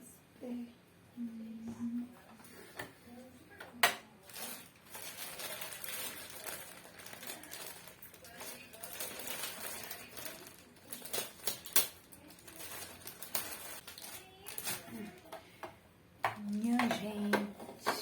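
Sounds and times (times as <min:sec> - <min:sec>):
packaging rustling: 0:04.2 - 0:15.3.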